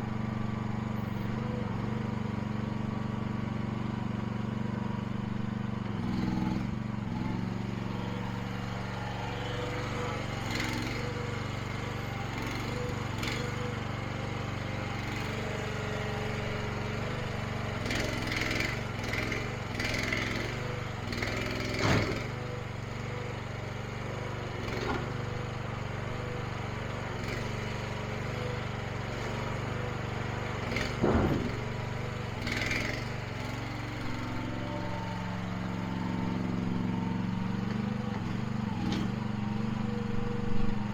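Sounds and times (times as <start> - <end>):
small engine running: 0.0 - 40.9
sharp knocks and clunks: 21.8 - 22.3, 30.8 - 31.8.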